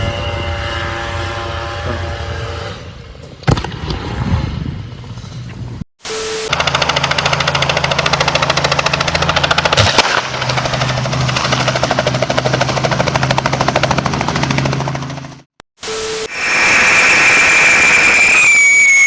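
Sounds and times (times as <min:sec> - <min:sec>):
aircraft blades chopping: 0:06.5 - 0:15.5.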